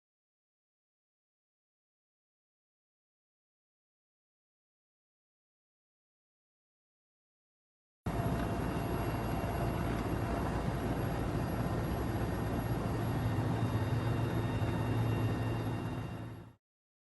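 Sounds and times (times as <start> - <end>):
low hum: 8.1 - 16.6.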